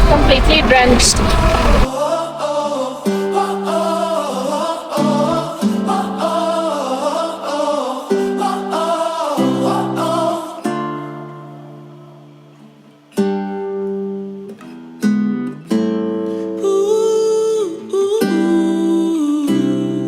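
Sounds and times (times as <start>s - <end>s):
acoustic guitar chords strummed: 0.0s - 2.4s
wordless vocal line: 0.0s - 10.8s.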